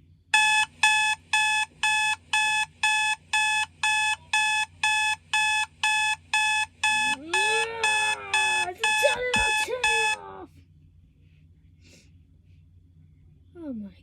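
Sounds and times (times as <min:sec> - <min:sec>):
alarm clock beeping: 0:00.4 - 0:10.2.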